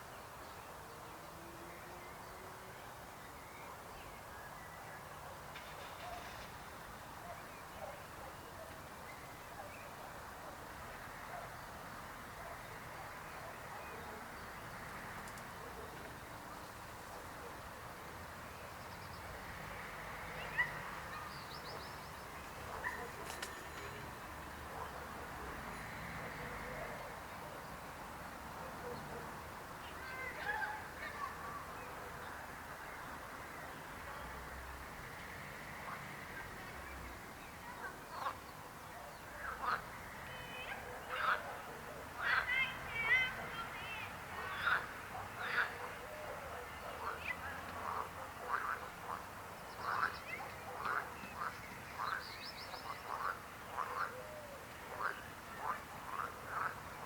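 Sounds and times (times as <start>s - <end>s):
distant frog chorus: 9.9s - 43.5s, 44.1s - 57.0s
frogs croaking in chorus: 39.4s - 42.6s, 44.3s - 57.0s.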